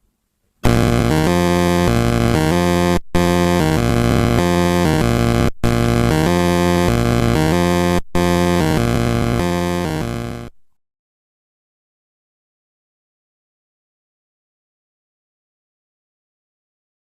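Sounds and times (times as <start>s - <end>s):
repeating background music: 0.6s - 10.5s.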